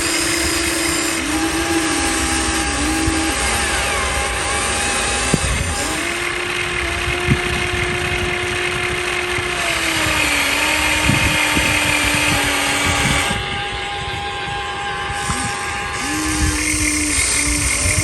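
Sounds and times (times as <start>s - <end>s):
gear rattle: 0.0s - 13.4s
higher-pitched motor whine: 0.0s - 18.0s
small electric motors whining: 0.0s - 18.0s.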